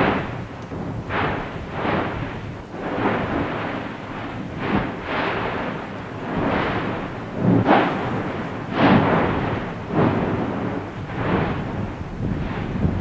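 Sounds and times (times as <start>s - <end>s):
volcano vent roaring and blasting: 0.0s - 13.0s.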